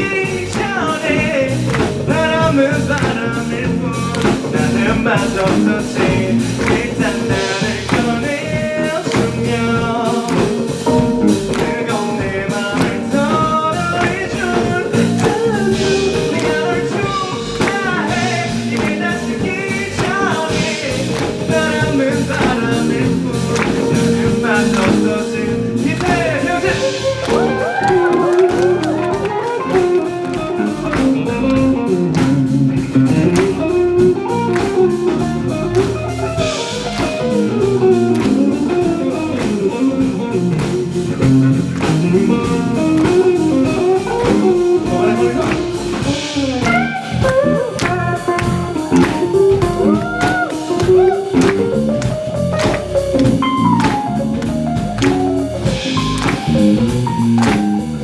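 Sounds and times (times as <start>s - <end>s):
bass: 0.0s - 58.0s
drums: 0.0s - 58.0s
lead guitar solo: 24.9s - 58.0s.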